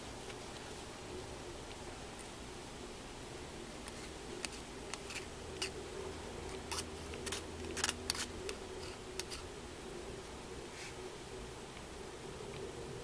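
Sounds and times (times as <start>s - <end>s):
steady low hum: 0.0s - 13.0s
hand tool clicking and scraping: 6.7s - 9.4s.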